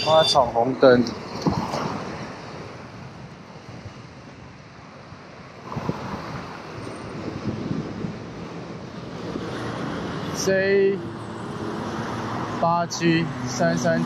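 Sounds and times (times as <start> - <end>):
traffic road noise: 0.0 - 14.0
wind buffeting microphone: 1.1 - 10.3.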